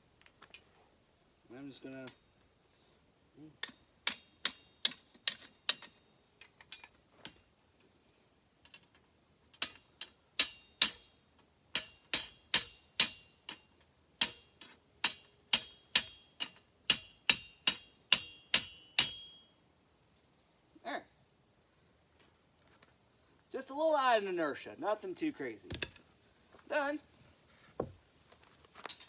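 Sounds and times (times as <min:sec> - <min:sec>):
hammer striking steel: 0:03.6 - 0:06.0, 0:10.4 - 0:11.1, 0:11.8 - 0:19.5.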